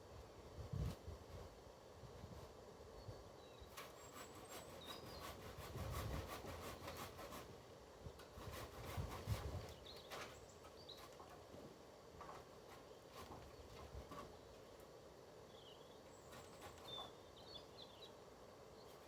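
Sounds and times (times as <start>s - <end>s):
hand saw cutting branch: 3.7s - 7.5s, 8.2s - 10.3s.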